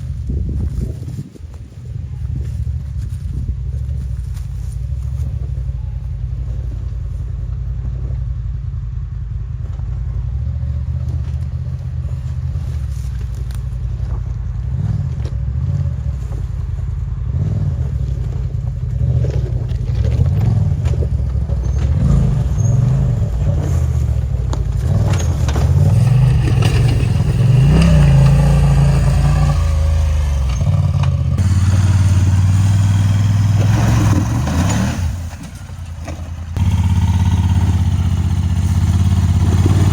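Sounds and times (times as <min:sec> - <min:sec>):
utility vehicle engine revving: 0:10.1 - 0:39.9.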